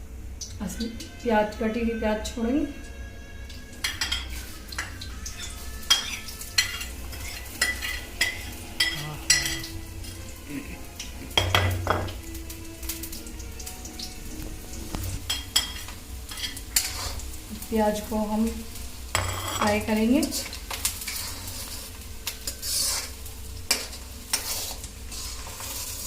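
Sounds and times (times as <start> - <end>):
onions sizzling in hot oil: 0.0 - 26.0
spoon clinking and scraping pan: 3.8 - 10.2, 15.2 - 17.2, 19.1 - 26.0.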